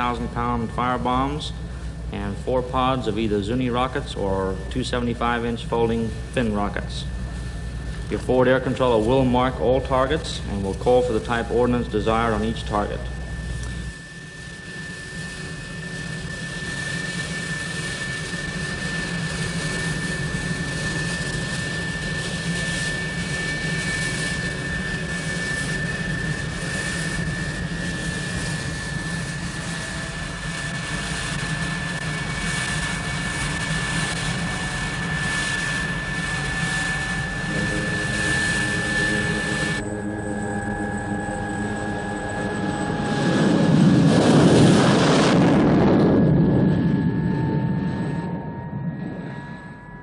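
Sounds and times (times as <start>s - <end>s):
jet engines whining: 0.0s - 50.0s.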